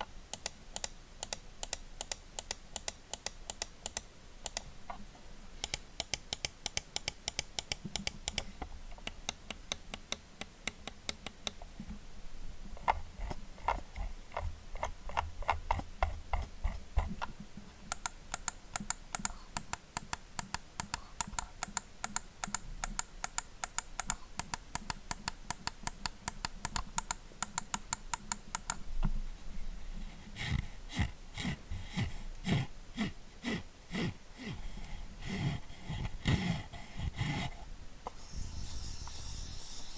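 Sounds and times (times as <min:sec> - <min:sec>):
mouse buttons clicking: 0:00.3 - 0:04.7, 0:05.6 - 0:11.7, 0:17.9 - 0:28.8.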